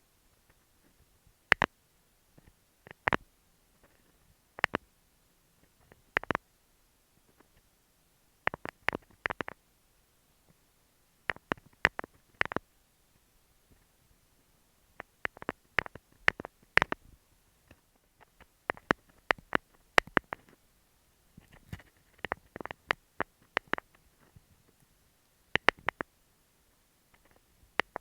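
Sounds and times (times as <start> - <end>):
fingernails tapping microphone: 21.4 - 23.9, 27.2 - 28.0.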